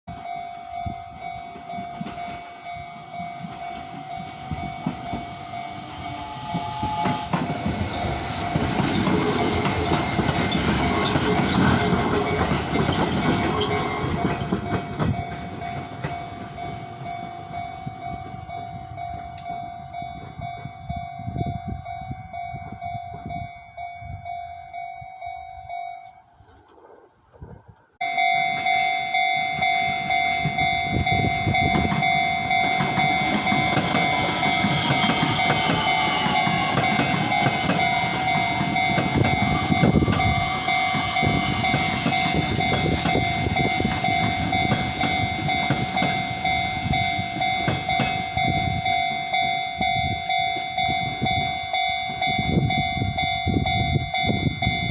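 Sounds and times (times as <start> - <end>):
level crossing alarm ringing: 0.1 - 26.4, 28.0 - 54.9
electric train passing: 0.1 - 27.0, 27.8 - 54.9.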